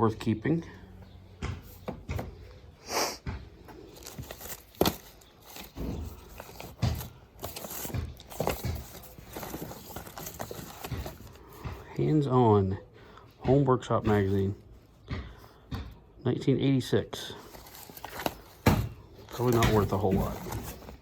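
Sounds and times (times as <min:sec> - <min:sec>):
objects tapping and knocking: 0:01.0 - 0:12.1, 0:13.0 - 0:16.2, 0:17.4 - 0:21.0
paper rustling: 0:03.8 - 0:12.0, 0:17.3 - 0:21.0.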